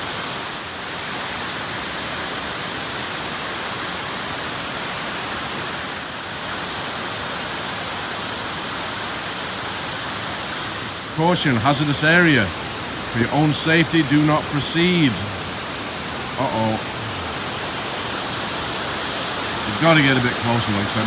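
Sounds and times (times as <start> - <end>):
waterfall roar: 0.0 - 21.0.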